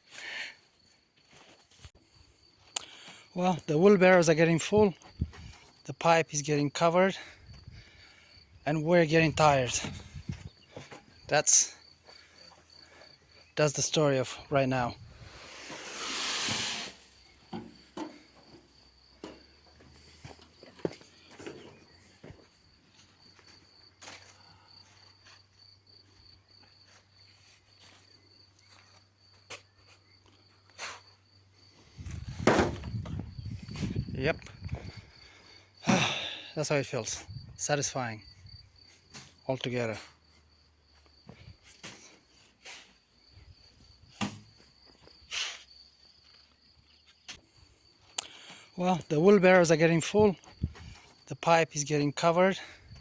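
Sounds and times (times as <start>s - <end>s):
crickets trilling: 0.0s - 53.0s
short scrapes: 15.2s - 17.2s.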